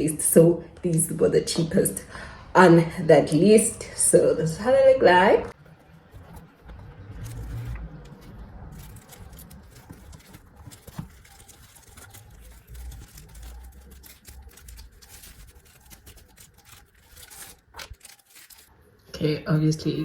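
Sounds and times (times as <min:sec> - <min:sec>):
packaging rustling: 0:05.5 - 0:19.0.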